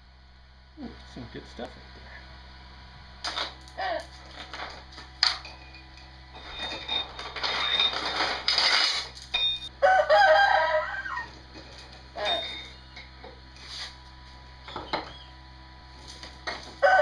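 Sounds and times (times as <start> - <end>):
rooster crowing: 9.7 - 11.4, 16.8 - 17.0
hissy workshop noise: 10.8 - 17.0.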